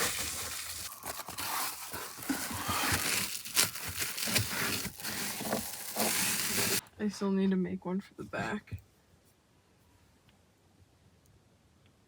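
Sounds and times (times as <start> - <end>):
window cover crinkling: 0.0 - 6.8.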